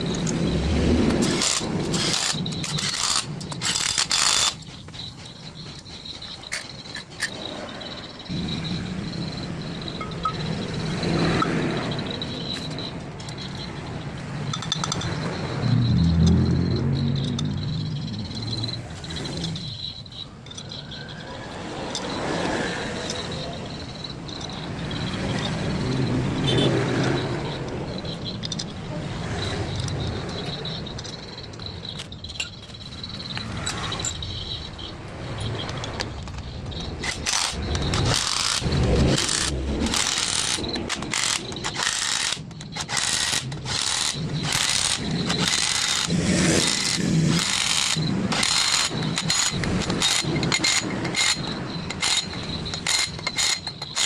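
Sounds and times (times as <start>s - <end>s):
metal clicks and knocks: 12.4s - 15.4s, 35.4s - 54.0s.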